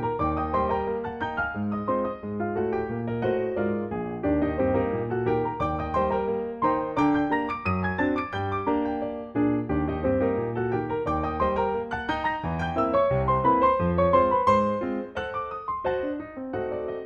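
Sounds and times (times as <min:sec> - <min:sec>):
piano melody: 0:00.0 - 0:17.0.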